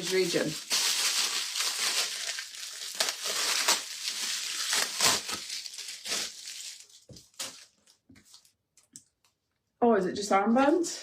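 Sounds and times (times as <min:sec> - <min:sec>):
plastic packaging crinkling: 0:00.0 - 0:08.6.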